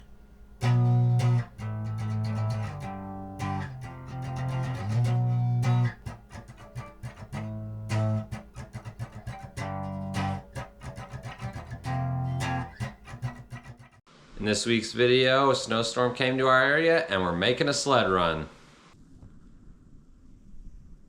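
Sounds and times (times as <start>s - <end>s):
plucked guitar: 0.0s - 14.0s
bass line: 0.6s - 13.9s.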